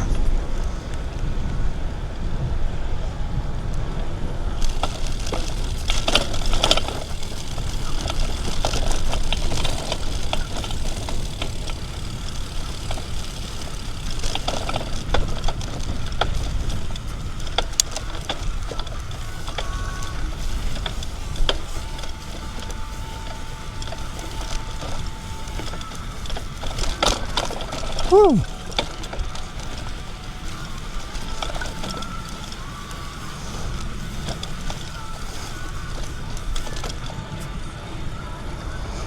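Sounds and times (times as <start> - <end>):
bicycle clicks and rattles: 0.0 - 39.0
wind rumbling on microphone: 0.0 - 39.0.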